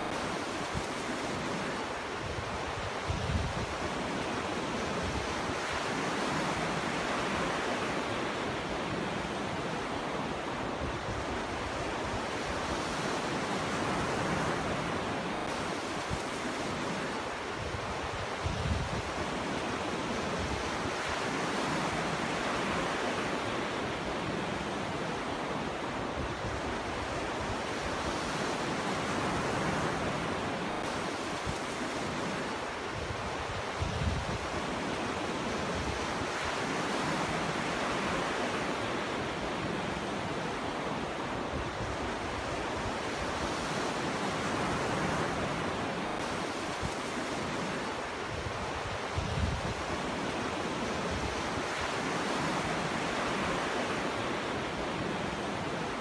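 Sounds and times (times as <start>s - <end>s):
surf rushing on beach: 0.0s - 56.0s.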